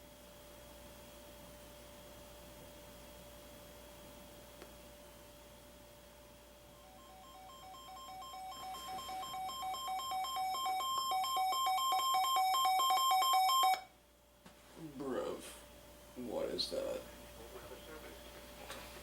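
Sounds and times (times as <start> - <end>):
pulsing electronic alarm beep: 6.8 - 13.9.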